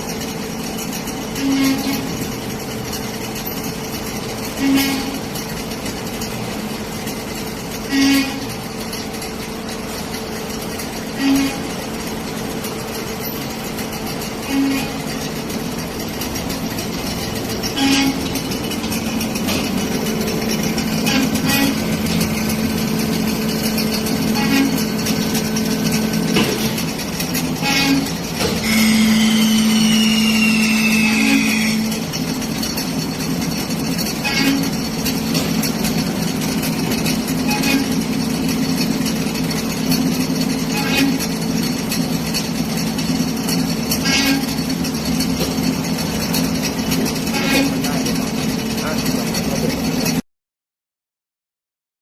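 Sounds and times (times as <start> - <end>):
band saw humming: 6.4 - 50.2
falling high-pitched whine: 28.6 - 33.0.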